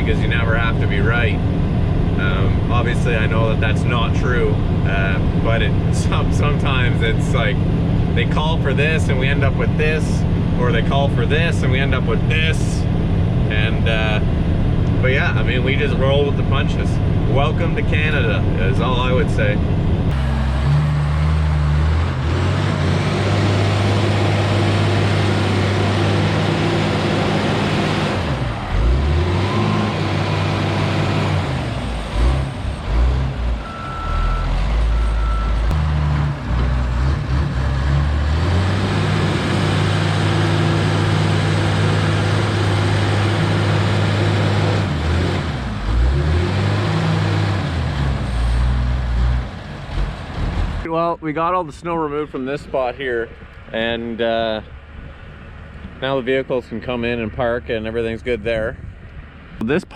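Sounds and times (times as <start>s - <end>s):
heavy diesel engine under load: 0.0s - 51.2s
short beeps: 33.6s - 35.7s.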